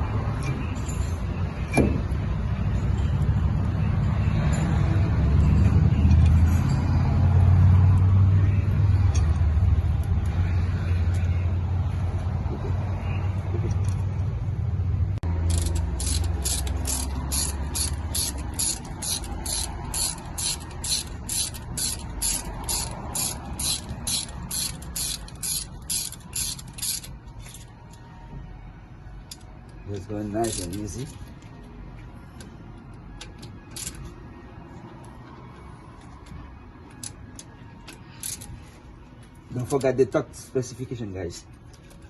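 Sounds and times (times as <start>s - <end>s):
low mechanical hum: 7.8s - 39.9s
ratchet wrench clicking: 15.3s - 28.0s, 29.2s - 31.2s, 32.8s - 34.2s, 36.2s - 38.6s.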